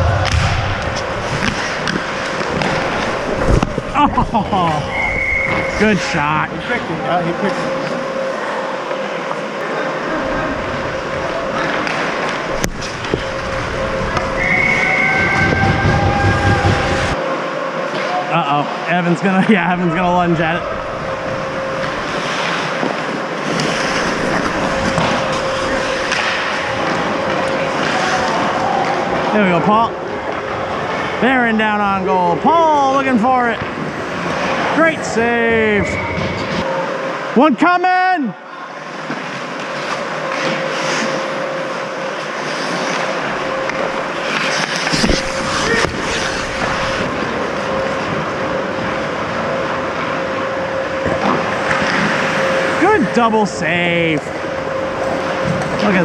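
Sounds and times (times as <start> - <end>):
constant hum: 0.0 - 37.6, 38.3 - 56.0
skate blades scraping ice: 22.1 - 28.4, 39.3 - 41.4, 42.2 - 48.0.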